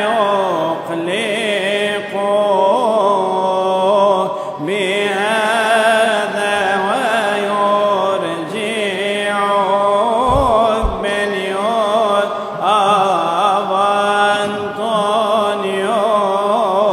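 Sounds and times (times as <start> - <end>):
man singing a hymn: 0.0 - 16.9
low thumps: 10.2 - 11.3
held low drone note: 10.3 - 11.1.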